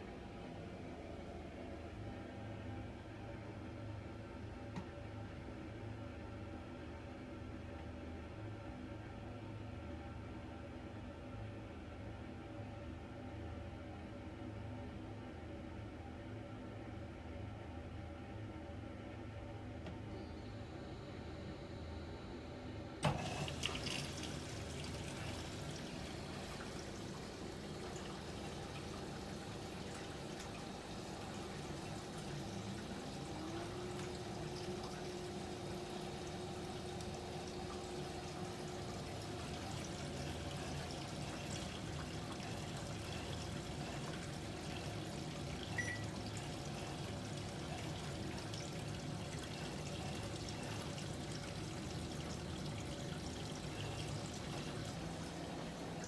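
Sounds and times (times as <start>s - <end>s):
washing machine hum: 0.0s - 6.8s, 19.0s - 56.0s
water pouring into washer drum: 23.0s - 56.0s.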